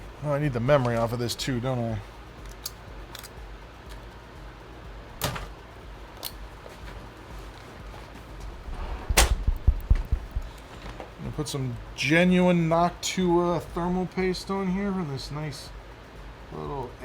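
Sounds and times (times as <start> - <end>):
low thump: 9.0 - 10.6.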